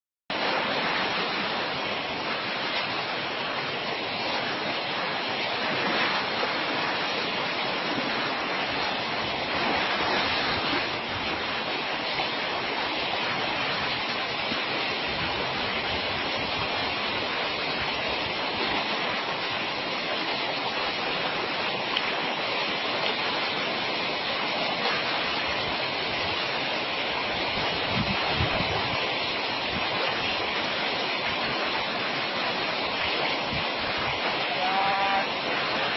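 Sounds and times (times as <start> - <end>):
flowing water: 0.3 - 35.9.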